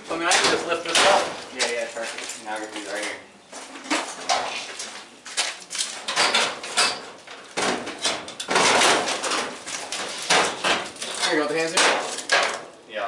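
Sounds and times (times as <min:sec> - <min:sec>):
sheet metal clanking: 0:00.2 - 0:01.6, 0:05.8 - 0:12.7
sheet metal scraping rattle: 0:05.8 - 0:12.7.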